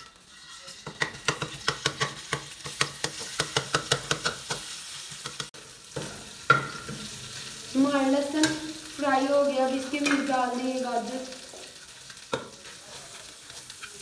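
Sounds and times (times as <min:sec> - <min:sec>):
utensil scraping against pan: 0:00.0 - 0:07.6, 0:11.5 - 0:14.0
oil sizzling in a pan: 0:00.0 - 0:14.0.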